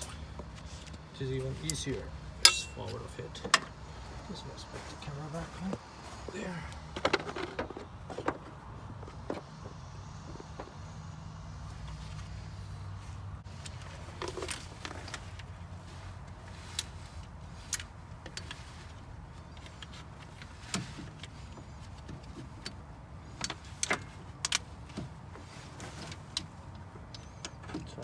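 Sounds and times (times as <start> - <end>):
metal tools clinking: 0.0 - 0.3, 1.6 - 3.3
steady low hum: 0.0 - 7.0.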